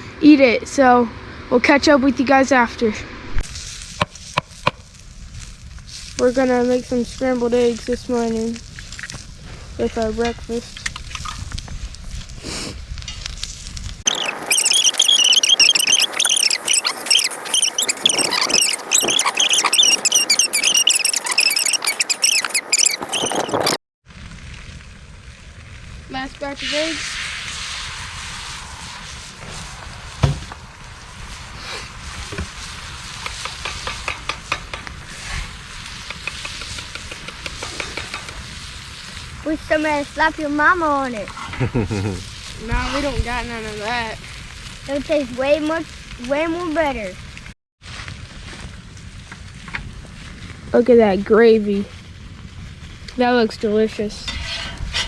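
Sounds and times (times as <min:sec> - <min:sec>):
low rumble: 0:00.0 - 0:03.7
eggs sizzling in frying pan: 0:03.4 - 0:23.2, 0:24.8 - 0:47.6
small animals chirping: 0:14.1 - 0:23.8
low thump: 0:30.2 - 0:30.6
utensil scraping pan: 0:54.1 - 0:55.0.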